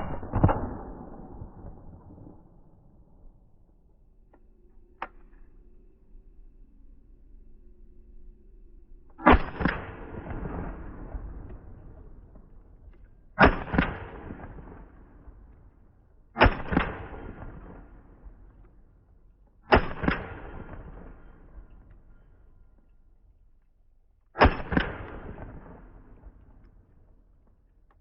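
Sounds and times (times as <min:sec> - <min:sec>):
shotgun shots: 0:00.0 - 0:02.0, 0:09.2 - 0:12.0, 0:13.4 - 0:15.1, 0:16.4 - 0:18.0, 0:19.7 - 0:21.7, 0:24.4 - 0:26.3
sharp crack with ringing tail: 0:00.0 - 0:03.8, 0:09.1 - 0:18.8, 0:19.7 - 0:22.5, 0:24.4 - 0:26.8.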